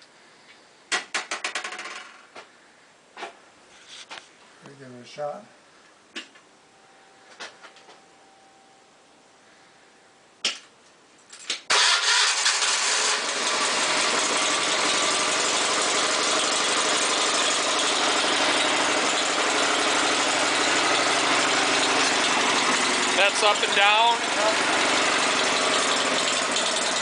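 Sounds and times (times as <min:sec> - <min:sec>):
gasoline engine running: 0:11.7 - 0:27.0.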